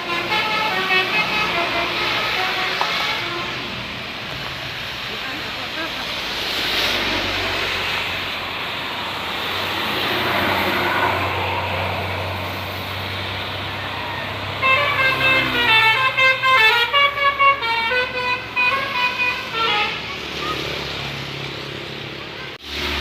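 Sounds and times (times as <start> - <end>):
multi-tone bus horn melody: 0.0 - 3.8, 14.5 - 20.2
road noise: 0.0 - 23.0
vehicle engine: 0.0 - 23.0.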